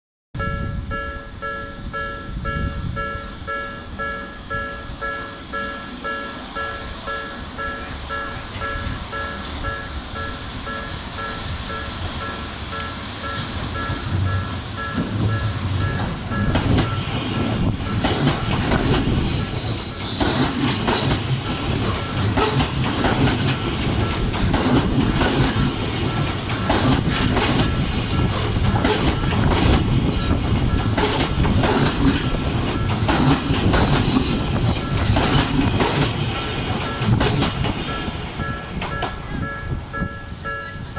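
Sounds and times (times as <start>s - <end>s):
train rumble: 0.4s - 40.9s
high squeal: 1.8s - 22.6s
train wheels clattering over rail joints: 10.7s - 39.5s.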